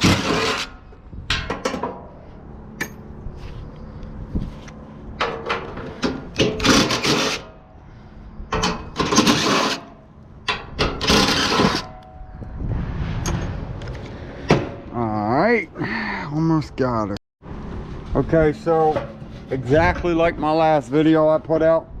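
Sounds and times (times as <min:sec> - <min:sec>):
sharp metal clicks and knocks: 0:10.4 - 0:12.2.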